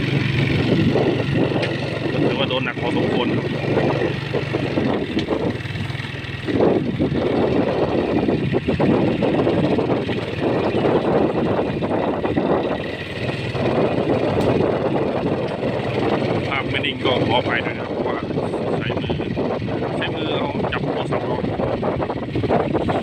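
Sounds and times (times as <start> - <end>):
rushing road noise: 0.0 - 23.0
vehicle engine humming: 0.0 - 23.0.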